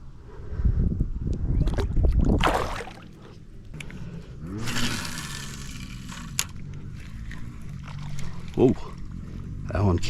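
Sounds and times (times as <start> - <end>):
fish splashing in water: 1.7 - 3.2.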